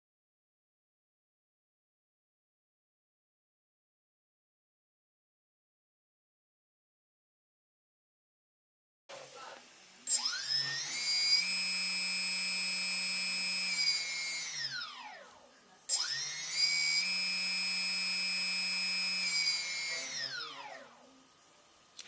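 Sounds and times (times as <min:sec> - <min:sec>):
drone motor whining: 0:10.1 - 0:15.3, 0:15.9 - 0:21.0.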